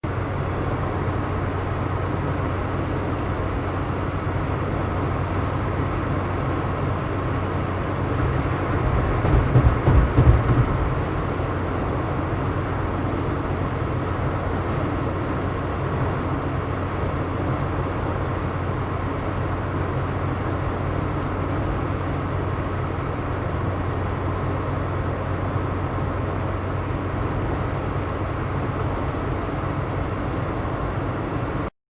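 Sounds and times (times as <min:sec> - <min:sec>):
car road and engine noise: 0:00.0 - 0:31.7
low bumping and rumbling: 0:08.0 - 0:13.2.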